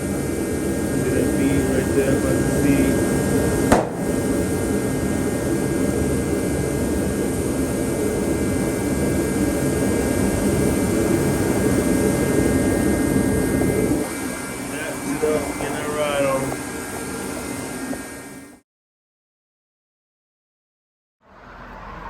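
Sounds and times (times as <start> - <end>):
faint high whine: 0.0 - 18.6
low mechanical drone: 0.0 - 18.6.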